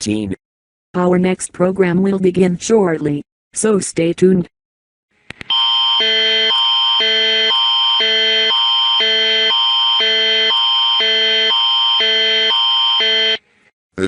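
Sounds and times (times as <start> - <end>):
harsh alternating alarm tone: 5.5 - 13.4.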